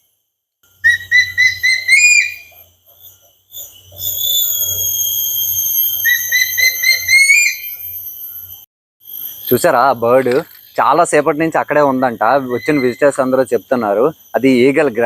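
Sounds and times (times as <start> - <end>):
eagle whistled calls: 0.8 - 8.4, 11.8 - 13.4.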